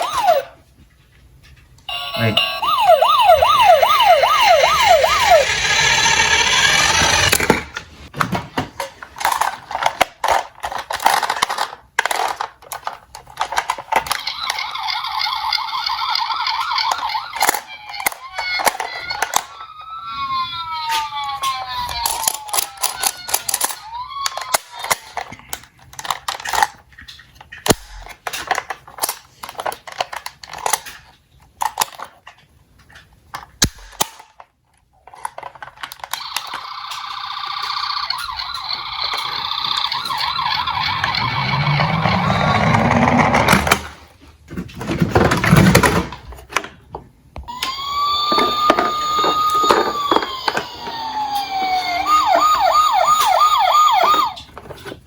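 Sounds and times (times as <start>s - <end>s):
siren wail: 0.0s - 0.6s, 1.9s - 7.4s, 14.3s - 24.6s, 36.2s - 42.9s, 47.5s - 54.5s
toy vehicles clattering: 1.4s - 46.8s, 47.5s - 55.0s.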